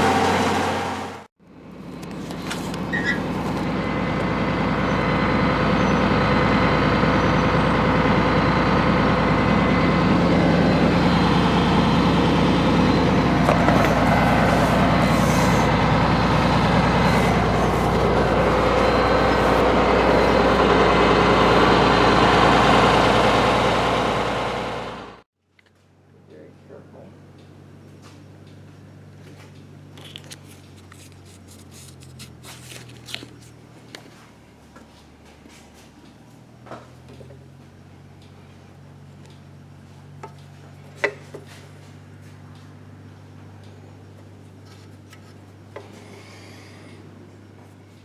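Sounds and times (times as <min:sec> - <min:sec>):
heavy engine running: 0:00.0 - 0:25.2.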